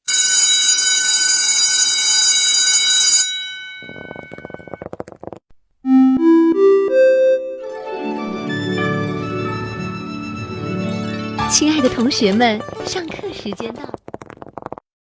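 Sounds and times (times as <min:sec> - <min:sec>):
fast rattling clicks: 0:03.8 - 0:05.4, 0:11.8 - 0:14.8.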